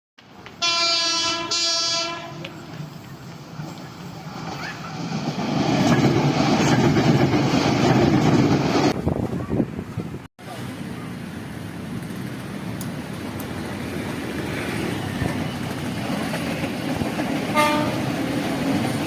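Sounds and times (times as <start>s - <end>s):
train running on rails: 0.2s - 19.0s
train horn blasts: 0.6s - 2.5s, 17.5s - 18.1s.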